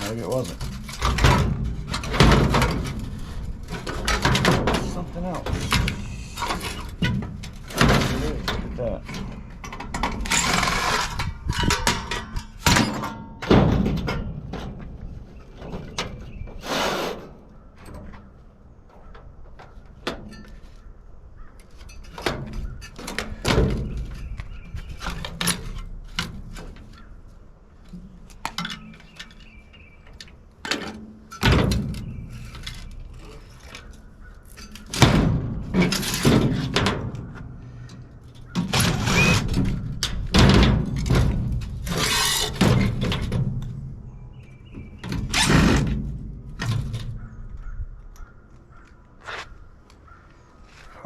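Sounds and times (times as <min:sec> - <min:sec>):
metal parts knocking and clanking: 0:00.0 - 0:16.6, 0:27.8 - 0:44.0
metal scraping: 0:00.0 - 0:20.9, 0:30.7 - 0:44.0.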